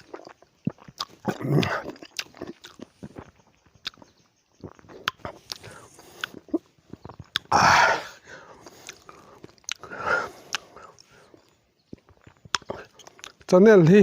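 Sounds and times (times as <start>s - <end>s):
mouth biting and chewing: 0.0s - 13.6s
breathy rush: 7.5s - 11.3s.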